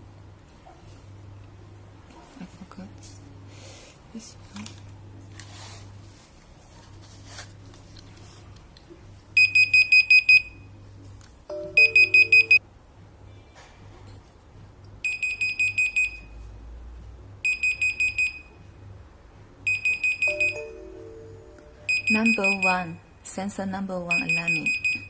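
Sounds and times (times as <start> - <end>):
rapid high alarm beeps: 11.8 - 12.6, 15.1 - 16.3, 17.5 - 18.6, 19.7 - 20.8, 21.8 - 23.0, 24.1 - 25.0.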